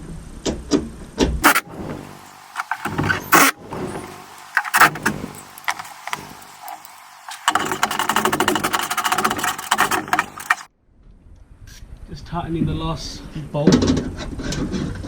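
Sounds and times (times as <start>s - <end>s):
knocks and clatters: 1.4s - 10.7s
ratchet clicking: 1.4s - 10.7s.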